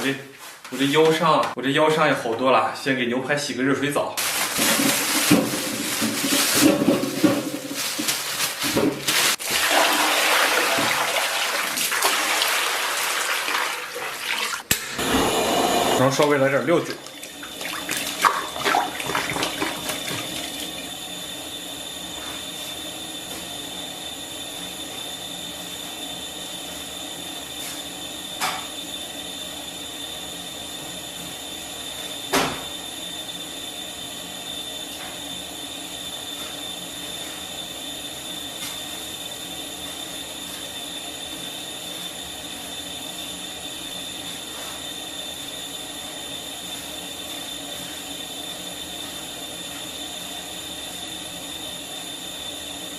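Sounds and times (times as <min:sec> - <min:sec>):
stove hissing with high whine: 0:00.0 - 0:52.9
liquid splashing into a pot: 0:09.4 - 0:14.7, 0:16.9 - 0:20.8.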